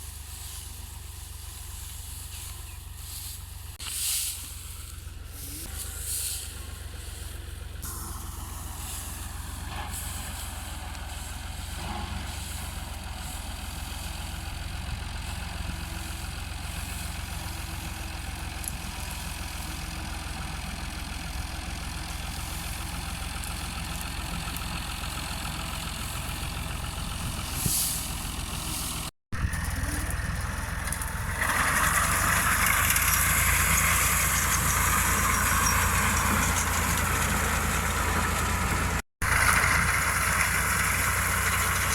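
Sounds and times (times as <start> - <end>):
tractor engine rumbling: 0.0 - 41.9
hiss: 3.0 - 7.2, 27.5 - 29.1
thresher machine noise: 5.4 - 41.9.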